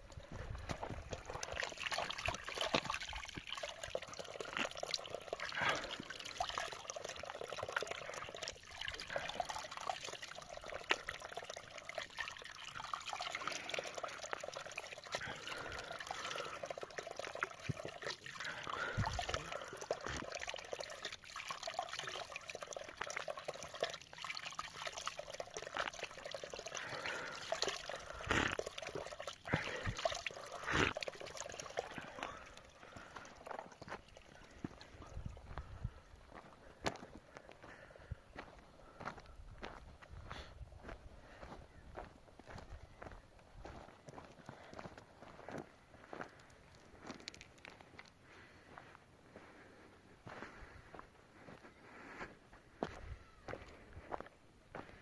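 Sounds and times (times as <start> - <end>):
water trickling and splashing: 0.0 - 36.9
small clicks and drips: 0.0 - 37.5, 44.1 - 48.5.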